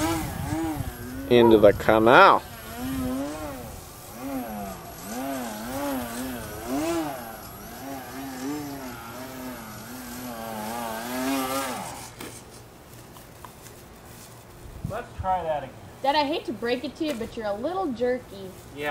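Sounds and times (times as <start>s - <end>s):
model airplane motor buzzing: 0.0s - 12.6s.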